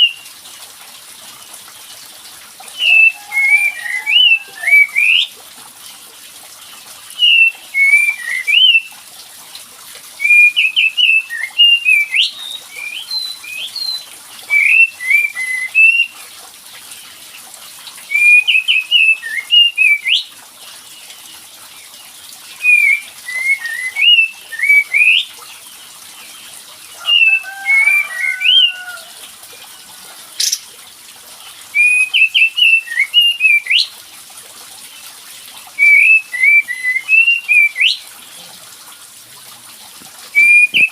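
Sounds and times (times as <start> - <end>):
bird whistled chirping: 2.8 - 5.3, 7.2 - 8.9, 10.2 - 16.1, 18.1 - 20.2, 22.6 - 25.3, 27.1 - 29.0, 30.4 - 30.6, 31.8 - 33.9, 35.8 - 38.0, 40.4 - 40.9.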